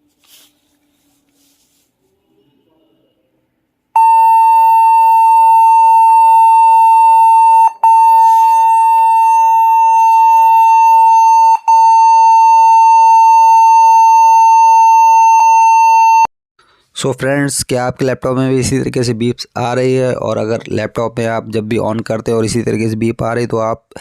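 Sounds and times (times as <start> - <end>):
laptop high beep tone: 4.0 - 16.3.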